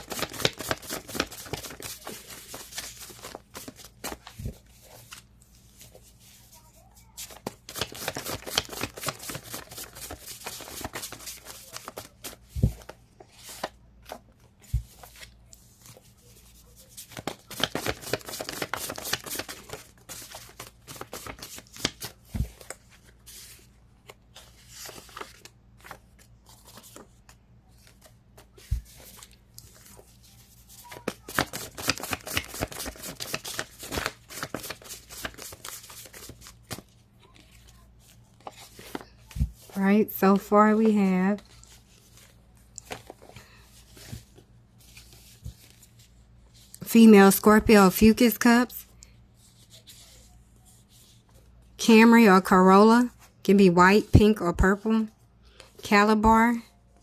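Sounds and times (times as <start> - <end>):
cards being shuffled: 0.0 - 6.5, 7.2 - 16.1, 16.8 - 39.8.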